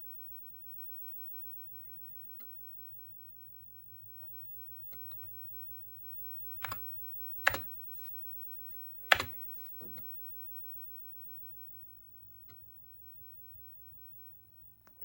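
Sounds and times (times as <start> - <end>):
keyboard keystrokes: 6.5 - 7.7, 9.0 - 9.4.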